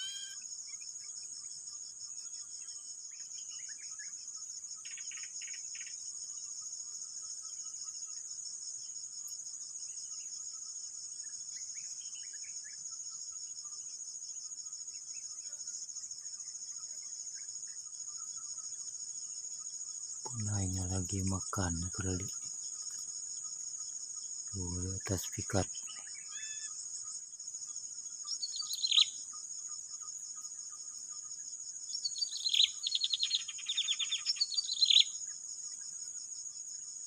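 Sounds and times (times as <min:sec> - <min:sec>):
high-pitched insect chorus: 0:00.0 - 0:37.0
bird chirps and whistles: 0:28.4 - 0:29.2, 0:32.1 - 0:35.1.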